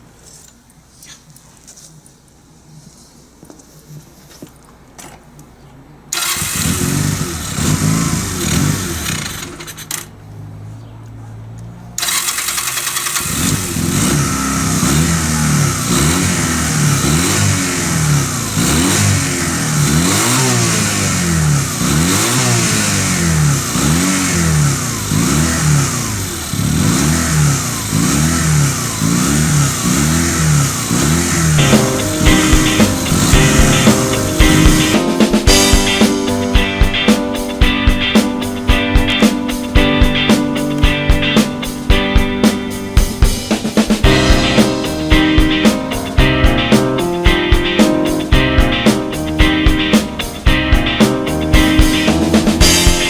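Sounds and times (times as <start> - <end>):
motorcycle engine revving: 6.2 - 10.1, 12.0 - 37.1, 48.8 - 53.0.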